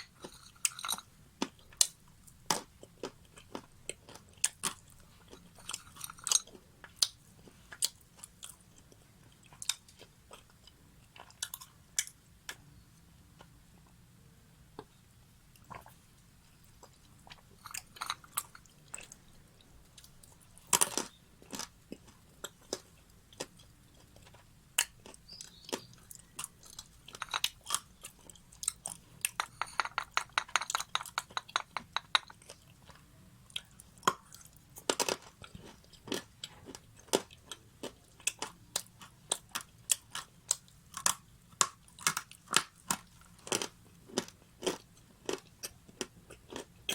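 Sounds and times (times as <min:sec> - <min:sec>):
crunchy chewing: 0:16.8 - 0:46.9.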